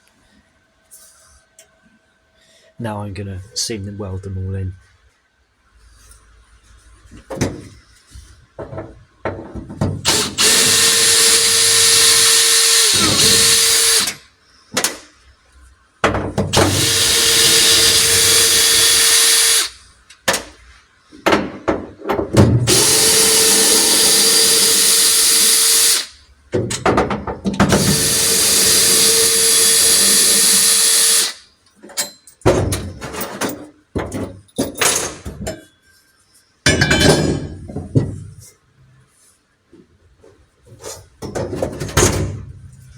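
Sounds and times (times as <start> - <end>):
welder hum: 10.1 - 14.2, 16.6 - 19.8, 22.7 - 26.2, 27.8 - 31.4
arc welder hissing: 10.1 - 14.3, 16.6 - 19.8, 22.7 - 26.2, 27.8 - 31.4.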